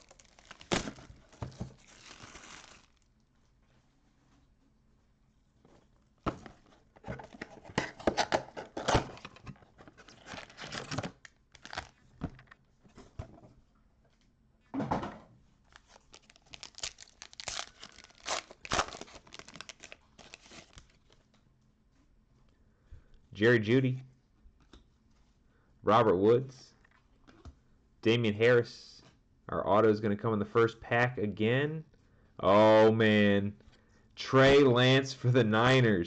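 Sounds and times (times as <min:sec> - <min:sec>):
packaging tearing and crinkling: 0:00.0 - 0:03.1, 0:10.0 - 0:12.6, 0:15.7 - 0:21.2.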